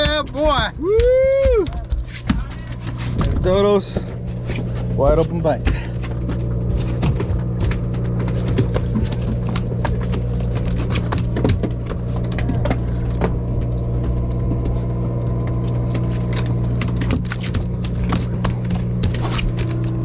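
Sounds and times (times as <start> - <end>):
boat engine humming: 0.0 - 20.0.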